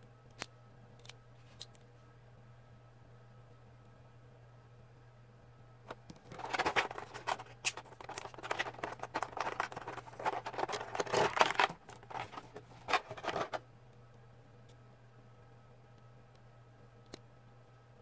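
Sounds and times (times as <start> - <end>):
plastic toy scratching and rustling: 5.9 - 13.6.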